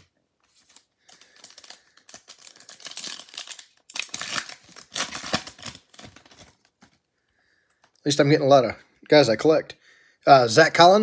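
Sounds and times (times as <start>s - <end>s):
trading cards crinkling and rustling: 0.0s - 7.1s.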